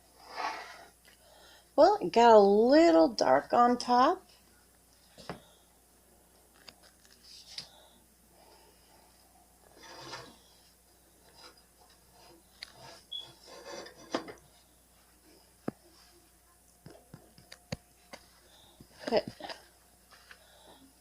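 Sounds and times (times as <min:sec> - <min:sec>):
scraping and rubbing in baking pan: 0:00.1 - 0:00.9, 0:09.7 - 0:10.6, 0:11.2 - 0:14.3.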